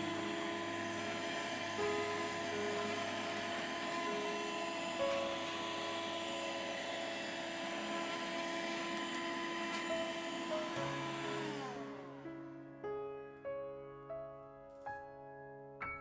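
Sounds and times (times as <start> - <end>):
vacuum cleaner motor running: 0.0 - 12.3.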